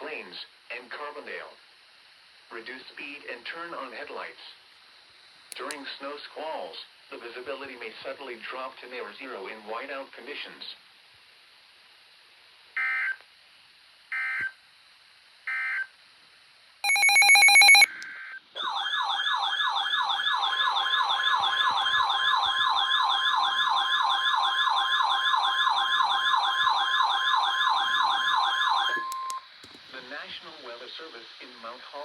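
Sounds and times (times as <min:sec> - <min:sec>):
steady alert tone: 0:16.8 - 0:17.9
short data bursts: 0:16.8 - 0:18.0
warbling siren-like alert tone: 0:18.6 - 0:29.0.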